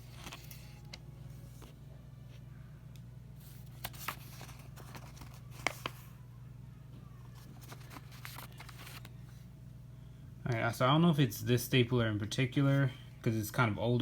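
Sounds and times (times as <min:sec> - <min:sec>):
paper rustling: 0:00.0 - 0:00.9, 0:03.4 - 0:06.1, 0:07.3 - 0:09.3.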